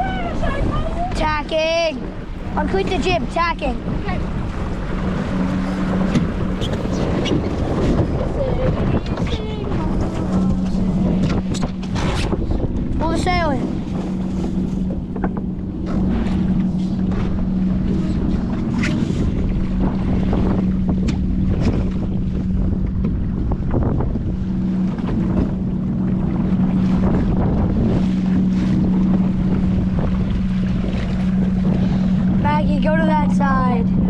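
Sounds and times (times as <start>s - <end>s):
motorboat engine drone: 0.0s - 34.0s
water splashing against hull: 0.0s - 34.0s
wind buffeting microphone: 0.0s - 34.0s.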